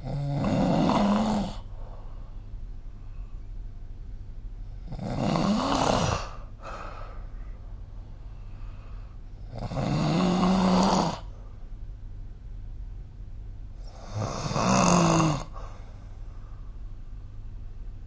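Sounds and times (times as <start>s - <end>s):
person snoring: 0.0s - 1.7s, 4.8s - 7.1s, 9.4s - 11.3s, 13.8s - 15.8s.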